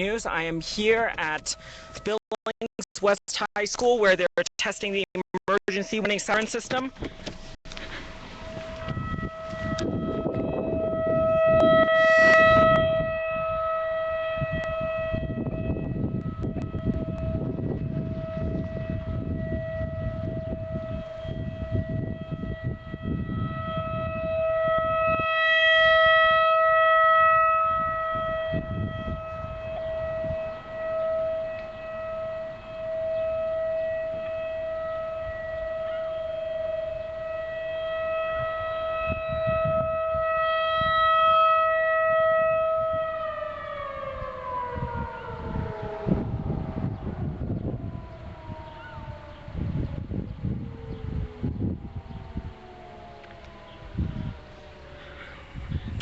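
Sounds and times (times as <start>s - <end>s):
emergency siren steady tone: 0.0s - 2.6s, 5.4s - 56.0s.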